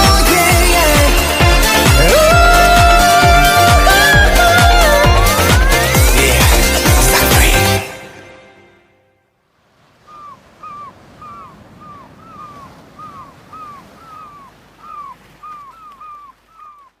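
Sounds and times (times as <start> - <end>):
bird chirping calls: 10.0 - 17.0.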